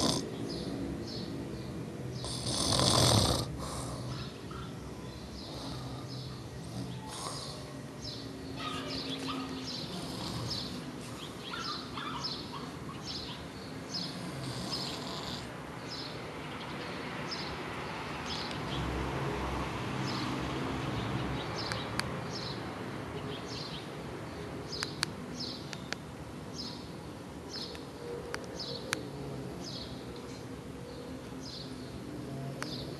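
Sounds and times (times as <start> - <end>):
snoring: 0.0 - 0.3, 2.2 - 4.1, 5.4 - 7.6, 9.9 - 10.8, 14.0 - 15.6
birds chirping: 0.0 - 19.0, 20.0 - 32.9.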